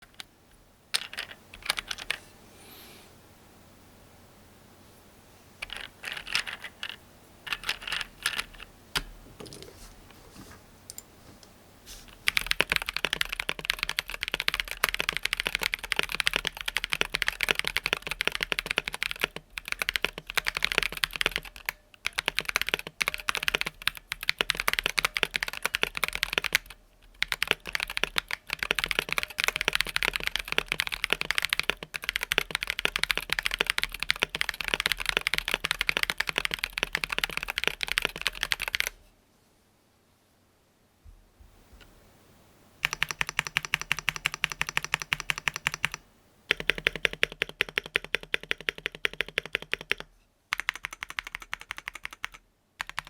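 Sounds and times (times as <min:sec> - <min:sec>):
mechanical keyboard typing: 0:01.0 - 0:02.2, 0:05.6 - 0:09.6, 0:12.2 - 0:39.0, 0:42.8 - 0:53.0.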